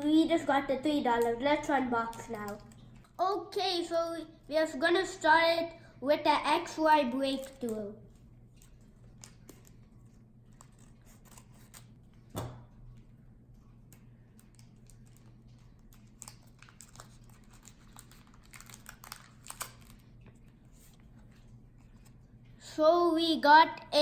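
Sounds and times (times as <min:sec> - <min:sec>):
wrapper crinkling and tearing: 0:14.4 - 0:20.3.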